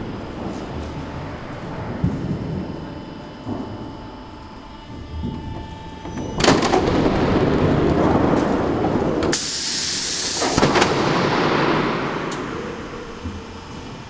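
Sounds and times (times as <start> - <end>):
machine hum: 0.0 - 14.0
sheet forming machine running: 0.0 - 14.0
high hiss: 9.3 - 13.6.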